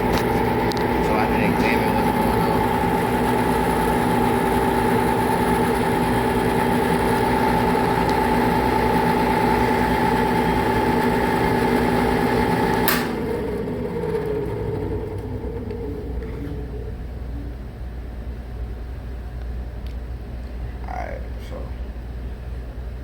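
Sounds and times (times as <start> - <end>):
hvac unit droning: 0.0 - 23.0
sharp click: 12.9 - 13.2.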